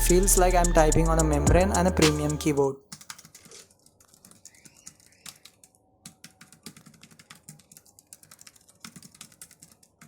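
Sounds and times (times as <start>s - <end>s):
soft keyboard key clicks: 3.0s - 10.0s.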